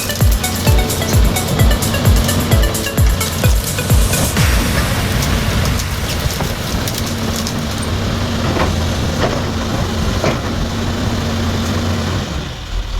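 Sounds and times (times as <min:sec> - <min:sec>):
excavator diesel engine running: 0:00.0 - 0:12.9
short knocks: 0:06.2 - 0:11.3.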